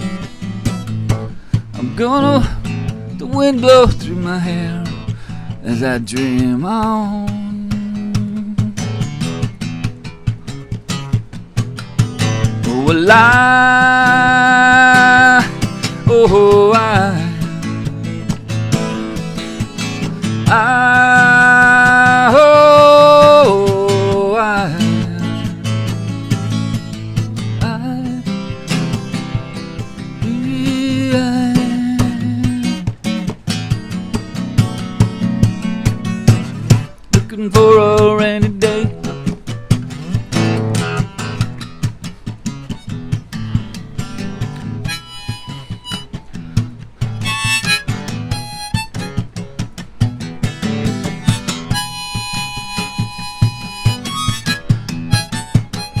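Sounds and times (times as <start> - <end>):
strummed acoustic guitar: 0.0 - 56.0
man singing wordless note: 1.8 - 8.8, 12.6 - 17.6, 20.4 - 25.5, 30.2 - 32.8, 37.2 - 39.2
harmonica playing: 18.2 - 24.2, 44.7 - 49.5, 50.6 - 56.0.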